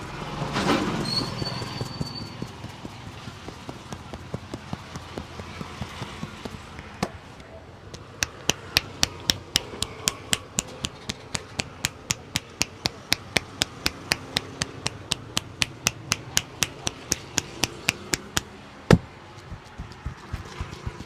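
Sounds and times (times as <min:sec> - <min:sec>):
hands clapping on a head: 0:07.9 - 0:18.5.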